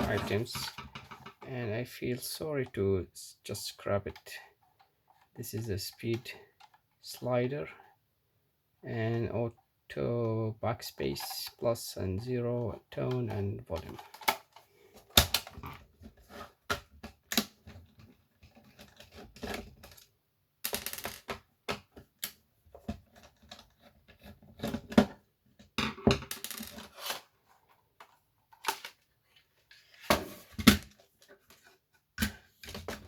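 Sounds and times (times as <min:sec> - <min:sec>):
plastic clicks and scrapes: 0:13.0 - 0:20.1.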